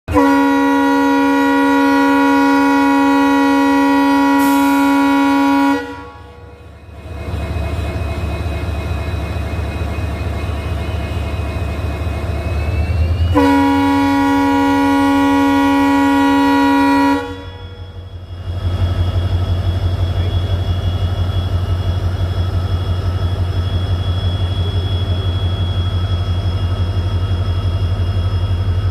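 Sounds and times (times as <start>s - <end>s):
locomotive horn blasts: 0.1s - 6.6s, 13.3s - 18.0s
diesel engine throbbing: 0.1s - 28.9s.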